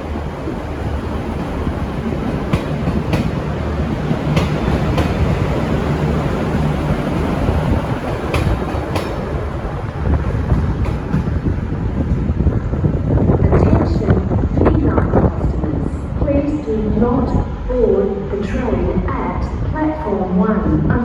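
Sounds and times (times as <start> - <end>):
diesel railcar engines droning: 0.0 - 21.0
train wheels clicking over rail joints: 1.1 - 12.2.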